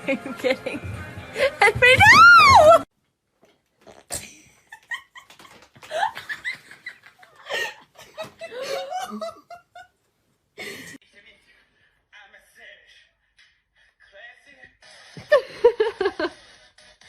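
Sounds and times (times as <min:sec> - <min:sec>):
person laughing and giggling: 0:04.2 - 0:10.0, 0:15.2 - 0:16.4.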